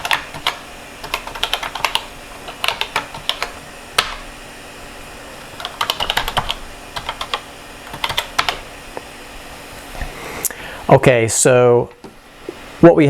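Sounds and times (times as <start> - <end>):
typing on computer keyboard: 0.0 - 4.2, 5.6 - 8.6.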